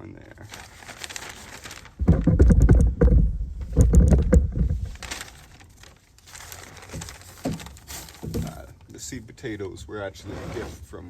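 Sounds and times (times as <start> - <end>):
hands rummaging through soil: 0.3 - 9.0
heavy bumping and knocking: 1.9 - 5.4, 6.8 - 8.8.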